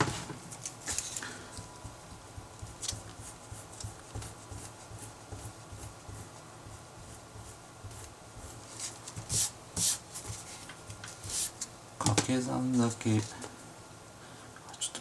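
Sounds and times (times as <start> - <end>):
pen scratching on paper: 2.1 - 8.6.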